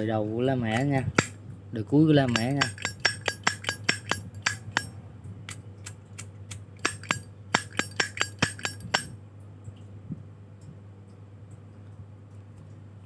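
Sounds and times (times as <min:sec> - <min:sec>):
lighter lid clicking open and shut: 0:05.9 - 0:09.1.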